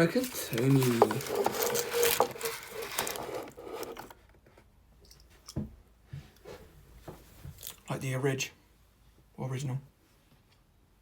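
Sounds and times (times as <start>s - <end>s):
plastic toy scraping and rustling: 0.0s - 4.4s.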